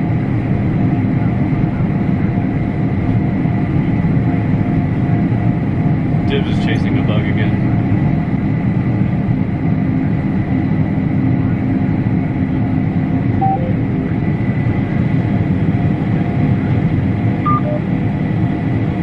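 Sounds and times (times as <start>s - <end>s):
combine harvester drone: 0.0s - 19.0s
two-note electronic beep: 13.4s - 13.8s, 17.5s - 17.9s.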